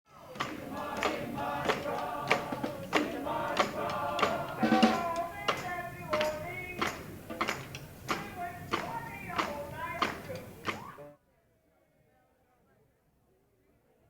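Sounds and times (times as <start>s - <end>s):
steady drum beat: 0.3s - 11.1s
brass band playing: 0.5s - 11.1s.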